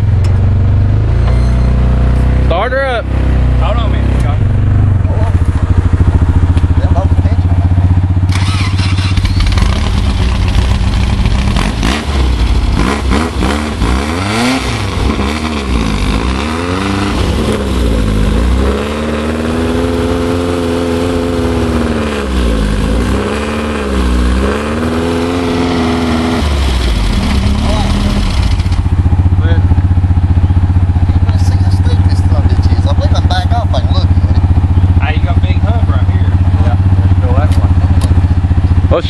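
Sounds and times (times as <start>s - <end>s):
engine revving hard: 8.3s - 28.8s.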